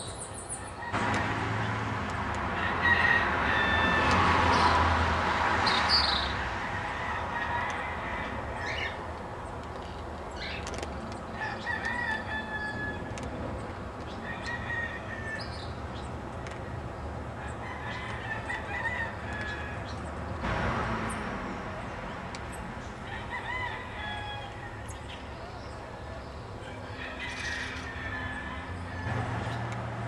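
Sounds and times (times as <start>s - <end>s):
steady background noise: 0.0s - 30.0s
rooster crowing: 2.5s - 5.0s, 6.5s - 9.0s, 11.4s - 13.1s, 14.2s - 15.6s, 17.4s - 20.0s, 23.0s - 25.3s, 26.6s - 29.6s
birds chirping: 5.6s - 20.4s.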